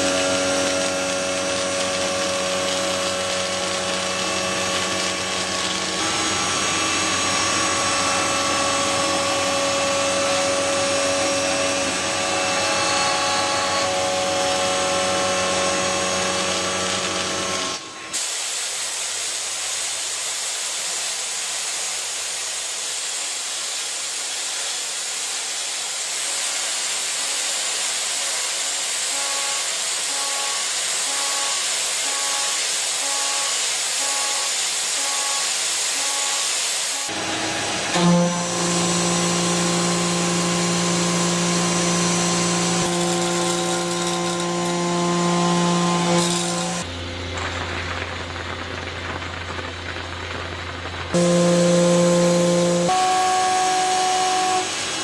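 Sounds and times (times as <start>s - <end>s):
metal cutting noise: 0.0s - 18.2s, 28.4s - 46.9s, 51.1s - 55.0s
milling machine whine: 0.0s - 18.2s, 26.0s - 55.0s
high machining hiss: 0.0s - 37.3s, 51.2s - 55.0s.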